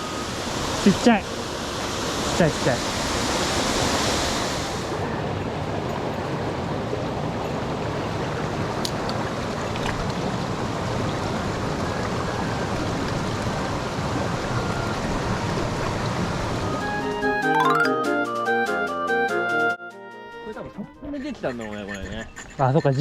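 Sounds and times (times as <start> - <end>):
stream water rushing: 0.0 - 18.0.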